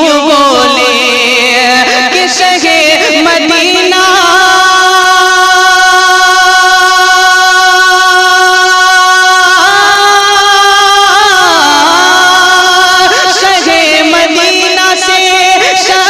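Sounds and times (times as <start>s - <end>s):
person singing devotional song: 0.0s - 16.0s.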